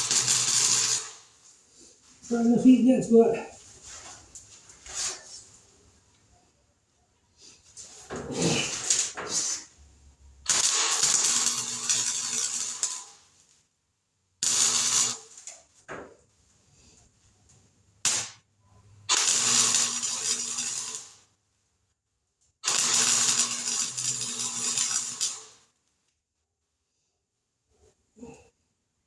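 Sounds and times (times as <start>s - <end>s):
welding arc crackling: 0.0s - 1.4s, 10.4s - 13.4s, 14.4s - 15.5s, 18.0s - 18.4s, 19.1s - 21.3s, 22.6s - 25.6s.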